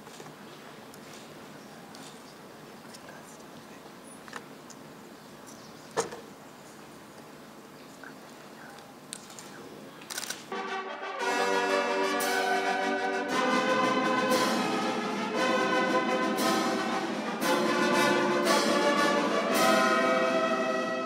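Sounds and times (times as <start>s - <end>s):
brass band playing held chords: 10.5s - 21.0s.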